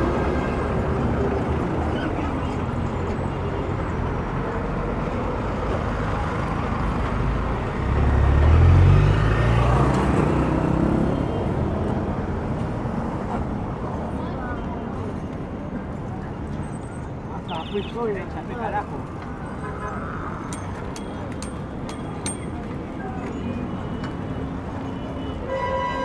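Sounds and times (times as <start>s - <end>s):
city street traffic: 0.0s - 26.0s.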